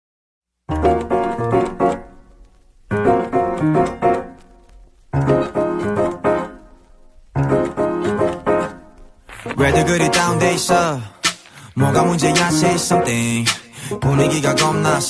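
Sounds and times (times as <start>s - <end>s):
piano-like keyboard chords: 0.7s - 15.0s.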